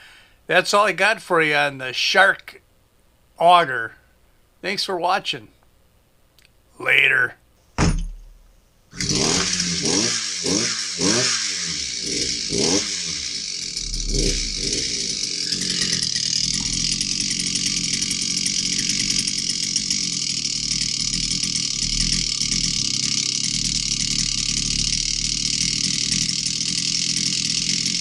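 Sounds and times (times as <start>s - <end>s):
small gasoline engine revving: 8.9s - 28.0s.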